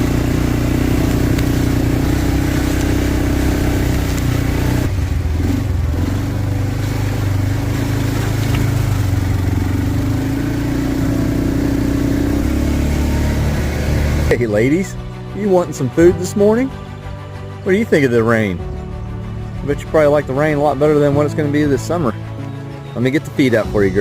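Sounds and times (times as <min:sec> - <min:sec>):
vehicle engine humming: 0:00.0 - 0:24.0.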